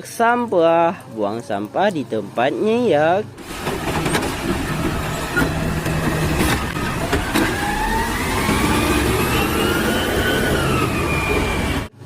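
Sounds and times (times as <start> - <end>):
vehicle engine revving: 3.4 - 12.0.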